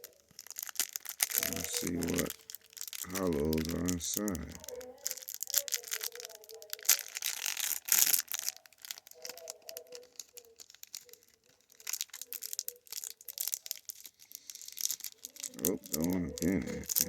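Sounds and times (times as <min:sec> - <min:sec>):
foil wrapper and cards rustling: 0:00.0 - 0:17.0.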